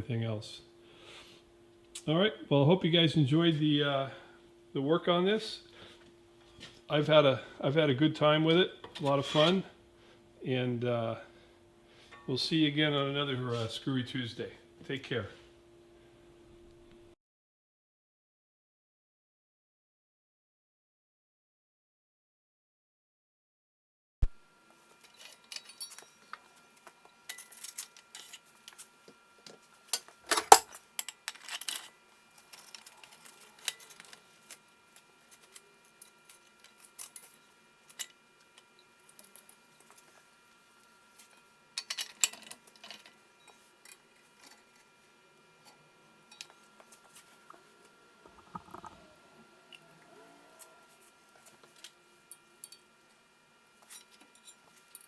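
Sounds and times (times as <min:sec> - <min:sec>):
faint high hum: 0:00.0 - 0:17.2, 0:24.3 - 0:55.0
metal parts clinking: 0:25.0 - 0:28.8, 0:29.9 - 0:40.2, 0:41.2 - 0:44.9.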